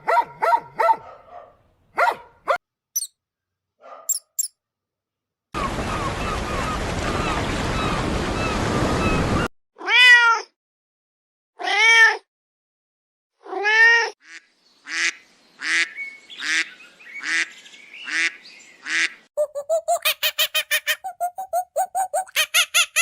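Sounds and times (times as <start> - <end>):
cat meowing: 9.8 - 10.5.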